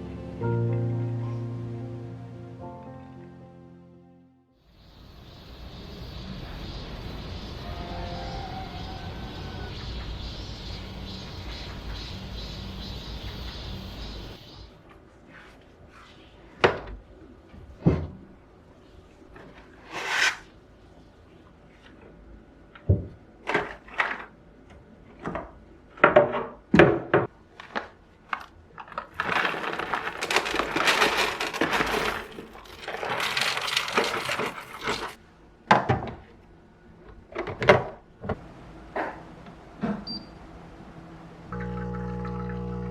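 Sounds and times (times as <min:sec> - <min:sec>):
steady hissing: 0:04.7 - 0:08.0
objects knocking and clattering: 0:25.2 - 0:27.8, 0:28.4 - 0:36.3.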